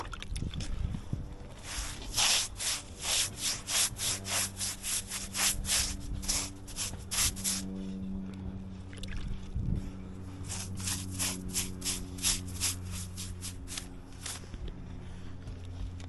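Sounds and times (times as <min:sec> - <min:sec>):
rubbing strokes on a surface: 0:01.6 - 0:07.9, 0:10.4 - 0:14.5.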